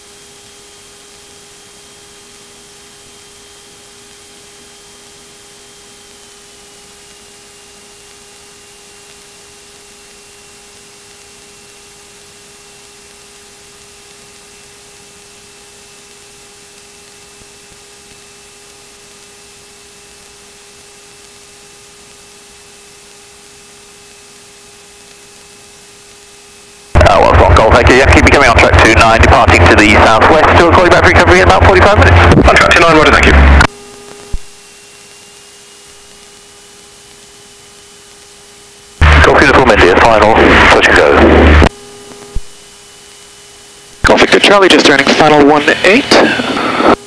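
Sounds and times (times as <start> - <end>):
steady whine: 0.0 - 47.0
radio intercom hiss: 27.0 - 34.6, 39.0 - 42.8, 44.0 - 47.0.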